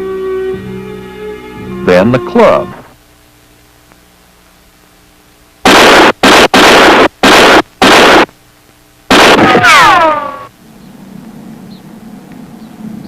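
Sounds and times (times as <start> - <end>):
faint steady hum: 0.0 - 13.0
harsh noise bursts: 5.6 - 8.4, 9.1 - 10.5
falling wailing tones: 9.2 - 10.5.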